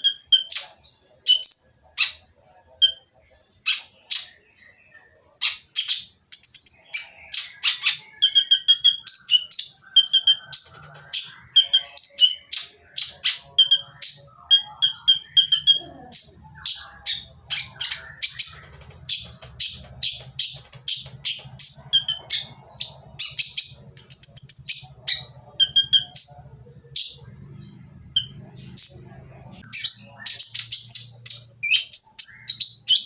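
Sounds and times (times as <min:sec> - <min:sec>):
sunbird harsh chirps: 0:00.0 - 0:33.0
faint low hum: 0:06.4 - 0:32.7.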